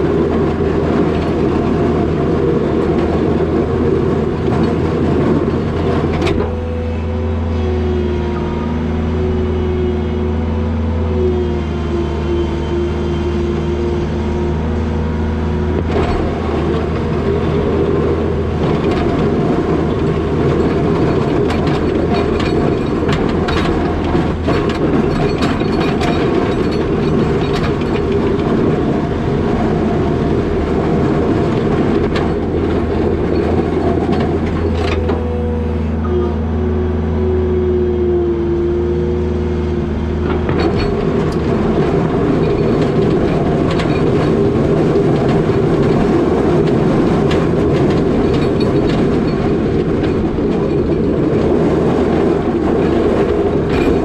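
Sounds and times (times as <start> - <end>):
clanks and rattles: 0.0 - 7.0, 15.3 - 36.5, 39.7 - 54.0
diesel engine running under load: 0.0 - 54.0.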